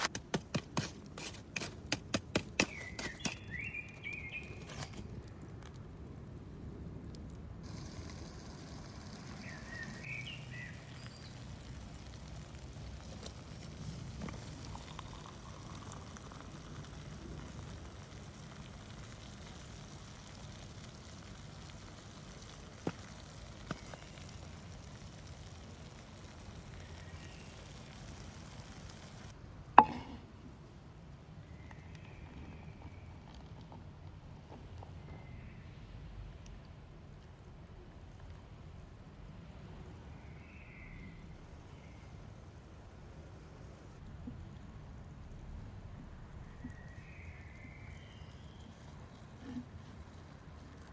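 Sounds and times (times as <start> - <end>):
low outdoor background noise: 0.0 - 50.9
bird chirping: 2.6 - 4.9, 9.3 - 11.4.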